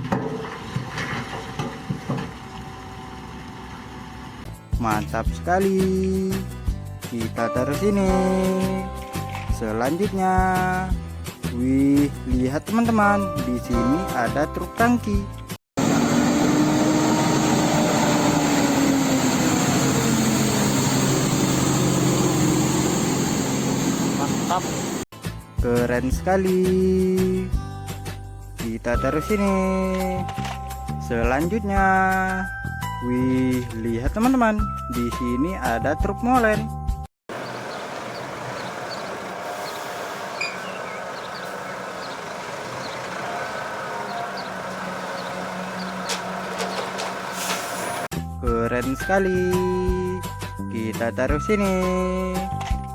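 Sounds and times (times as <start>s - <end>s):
engine drone: 15.8s - 25.1s, 37.3s - 48.1s.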